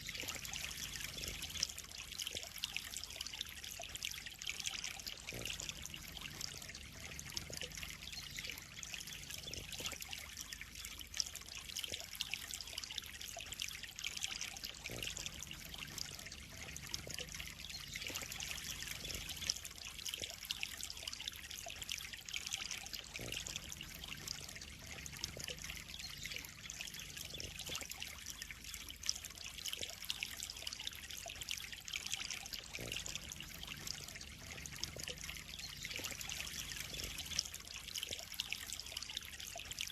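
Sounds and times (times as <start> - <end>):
water trickling into a pond: 0.0 - 39.9.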